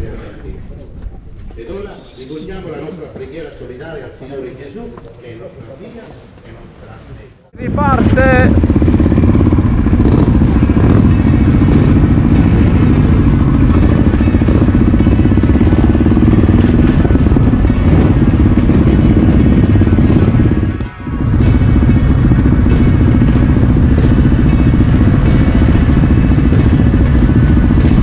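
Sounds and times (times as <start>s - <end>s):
motorcycle engines running: 7.6s - 28.0s.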